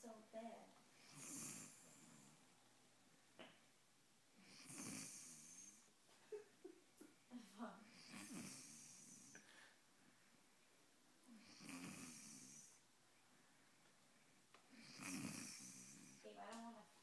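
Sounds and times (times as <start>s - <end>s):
person snoring: 1.0s - 2.3s, 4.4s - 5.8s, 7.9s - 9.4s, 11.3s - 12.8s, 14.7s - 16.2s.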